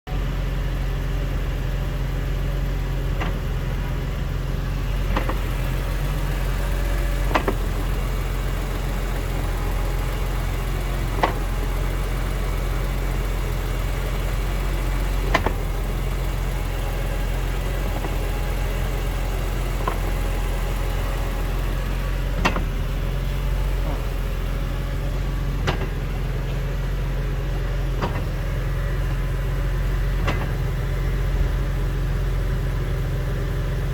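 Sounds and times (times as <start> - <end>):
car engine running: 0.1 - 33.9
sharp driveline clunk: 11.1 - 11.6, 15.2 - 15.7, 22.4 - 22.9, 25.6 - 26.6, 28.0 - 28.4, 30.2 - 30.7.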